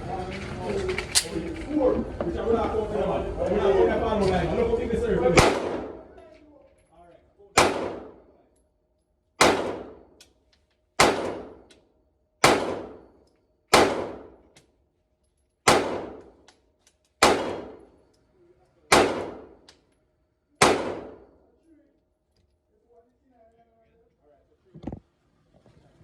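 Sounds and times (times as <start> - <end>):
pistol shots with ringing echo: 5.4 - 6.2, 7.5 - 8.3, 9.4 - 10.2, 11.0 - 11.7, 12.4 - 14.5, 15.6 - 16.4, 17.2 - 18.0, 18.9 - 19.7, 20.6 - 21.4.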